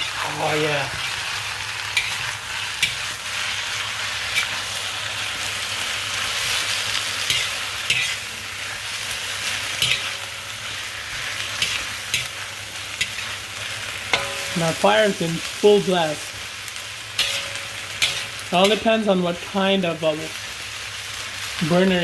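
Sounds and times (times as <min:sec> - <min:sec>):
spatula scraping a wok: 0:00.0 - 0:14.9, 0:17.1 - 0:19.1
noodles sizzling in a wok: 0:00.0 - 0:22.0.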